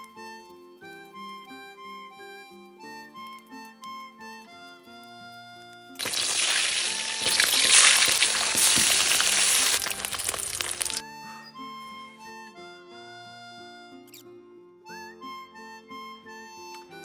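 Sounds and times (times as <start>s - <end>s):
harmonica and guitar music: 0.0s - 17.0s
food sizzling in a pan: 6.0s - 11.0s.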